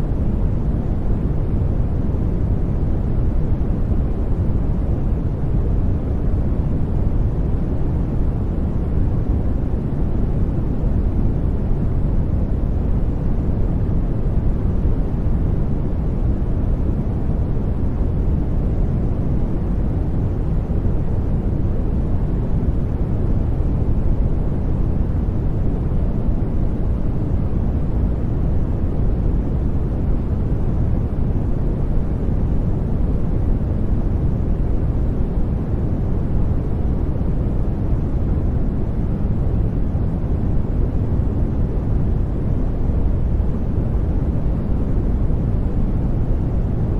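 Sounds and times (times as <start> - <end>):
white noise with gentle rain: 0.0 - 46.9.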